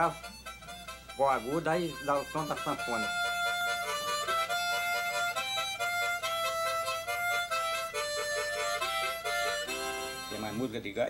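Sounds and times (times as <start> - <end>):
harmonica melody: 0.0 - 11.0.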